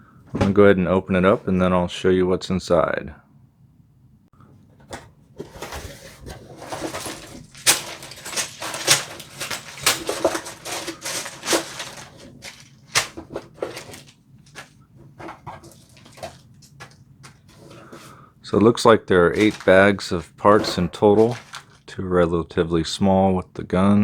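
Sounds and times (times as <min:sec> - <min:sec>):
plastic bags crinkling: 0:05.5 - 0:18.2, 0:19.2 - 0:21.9
cardboard box being opened: 0:19.3 - 0:19.9, 0:20.6 - 0:21.8.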